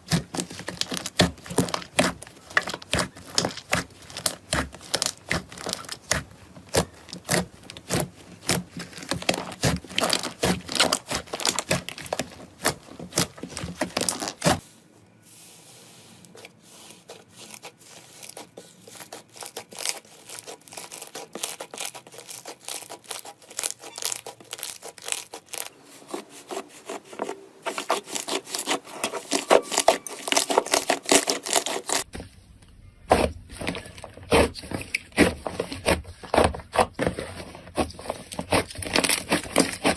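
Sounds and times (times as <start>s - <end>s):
soft squishing: 0.0s - 39.9s
hands squeezing slime: 16.7s - 25.7s.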